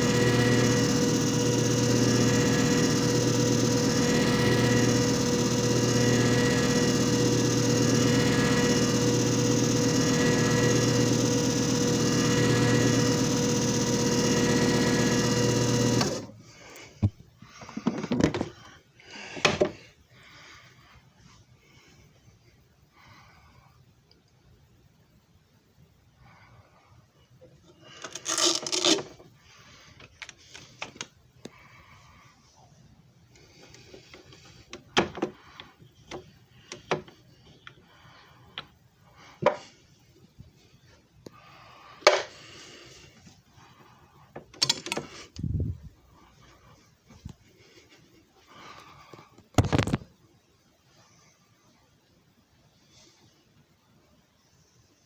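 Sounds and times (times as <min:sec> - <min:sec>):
machine motor humming: 0:00.0 - 0:16.3.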